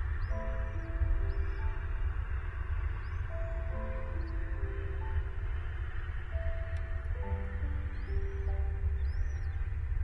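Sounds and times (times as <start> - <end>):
steady low rumble: 0.0 - 10.0
sustained held notes music: 0.0 - 10.0
faint high chirp: 7.7 - 9.6.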